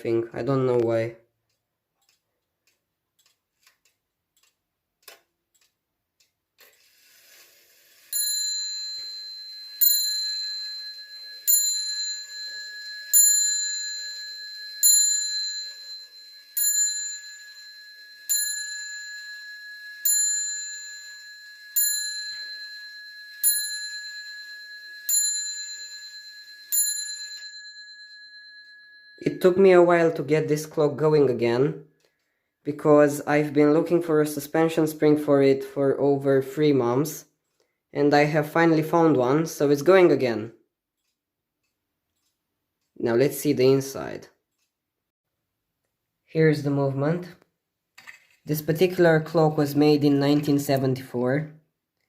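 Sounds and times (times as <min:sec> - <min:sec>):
faint clockwork whirr: 0:00.0 - 0:34.6, 0:38.9 - 0:46.2
clock bell striking: 0:08.2 - 0:30.3.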